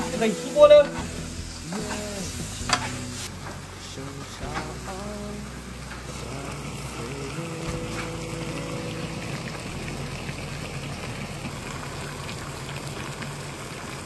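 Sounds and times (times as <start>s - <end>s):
stew bubbling in a wok: 5.7s - 14.0s.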